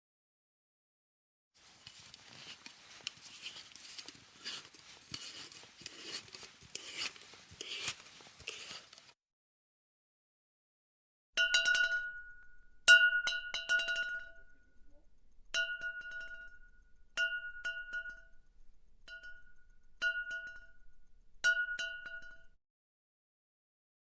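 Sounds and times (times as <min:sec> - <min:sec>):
glass bottle taps ringing: 0:11.4 - 0:14.8, 0:15.5 - 0:18.4, 0:19.1 - 0:22.6.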